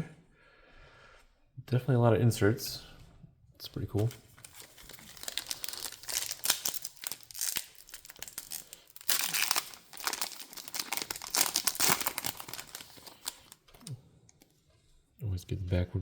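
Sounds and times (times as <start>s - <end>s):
foil wrapper crinkling and tearing: 4.0s - 13.9s.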